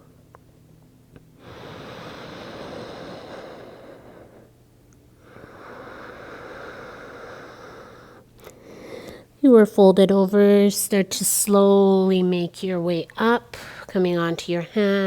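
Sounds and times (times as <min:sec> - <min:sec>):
slow deep breathing: 0:01.2 - 0:09.4.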